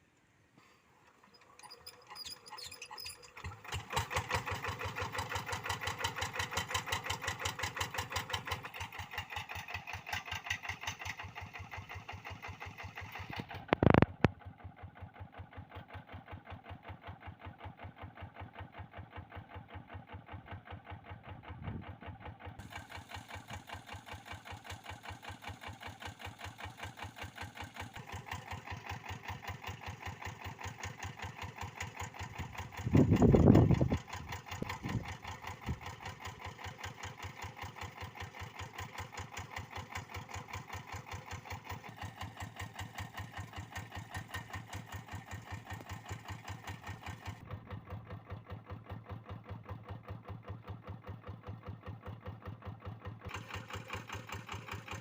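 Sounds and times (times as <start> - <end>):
diesel engine idling: 14.4 - 55.0.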